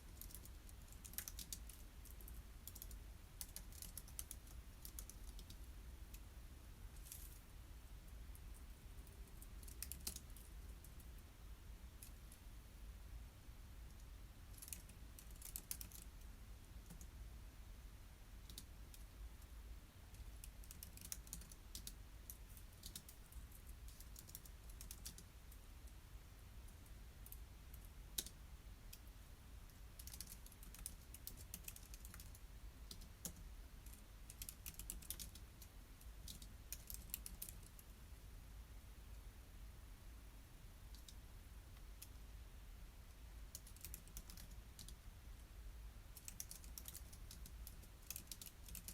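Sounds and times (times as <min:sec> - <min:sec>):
keyboard typing clicks: 0:34.3 - 0:35.4, 0:46.2 - 0:48.9.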